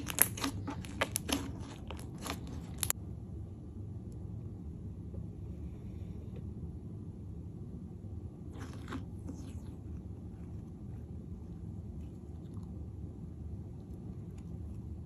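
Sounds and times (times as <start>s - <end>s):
hands handling slime: 0.0s - 2.9s
sticky crackly clicks: 0.0s - 3.0s.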